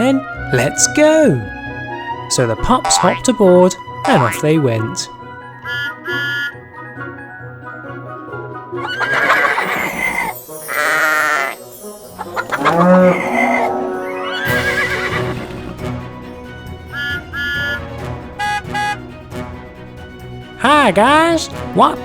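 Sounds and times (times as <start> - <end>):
light background music: 0.0 - 22.0
farm animal calls: 2.8 - 5.0, 5.6 - 6.6, 8.8 - 11.6, 12.2 - 15.7, 16.9 - 19.0.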